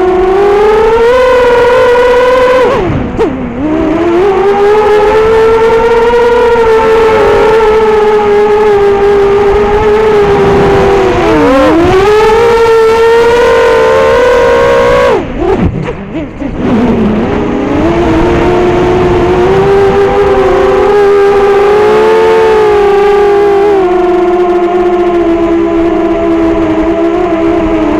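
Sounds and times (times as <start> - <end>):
quadcopter motors whining: 0.0 - 27.9.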